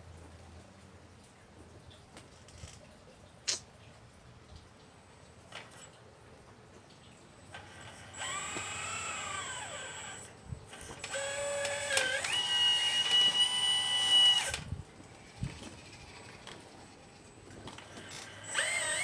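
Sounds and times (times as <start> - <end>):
electric motor whine: 7.5 - 14.7, 17.7 - 19.0.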